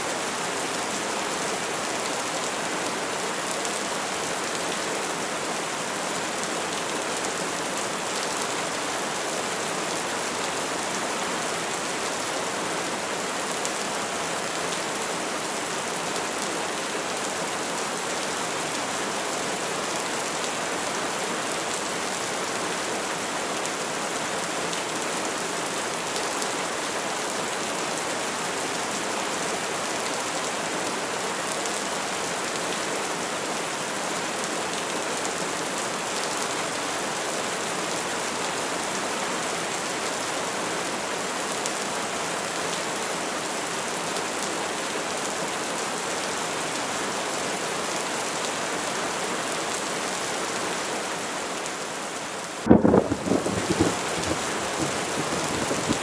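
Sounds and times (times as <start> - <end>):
rain pattering: 52.5 - 56.0.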